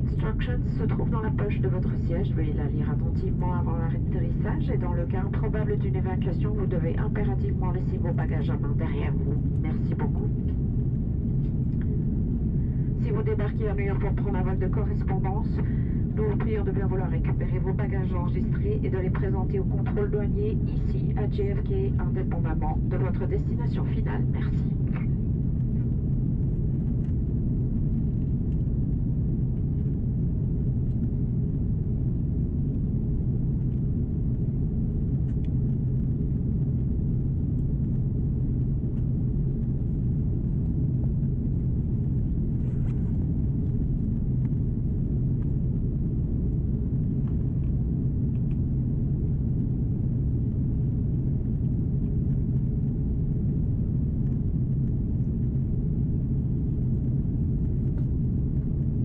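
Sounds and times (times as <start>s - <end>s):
airplane cabin engine rumble: 0.0s - 59.0s
even hum: 0.0s - 59.0s.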